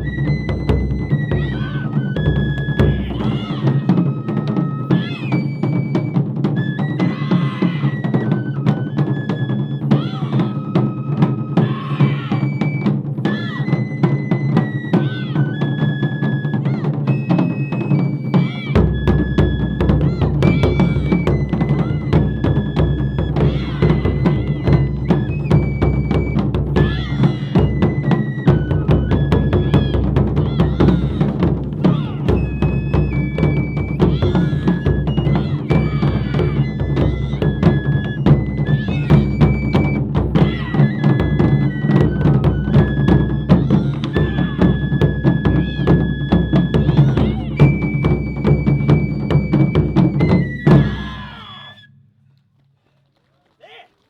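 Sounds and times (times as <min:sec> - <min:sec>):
drum ensemble playing fast rhythm: 0:00.0 - 0:15.6, 0:16.6 - 0:51.4
deep bass drum: 0:20.0 - 0:41.3.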